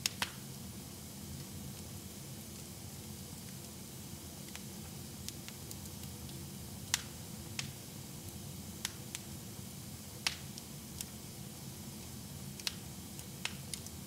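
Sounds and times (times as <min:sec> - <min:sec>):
fire crackling and popping: 0:00.0 - 0:00.6, 0:01.2 - 0:14.0.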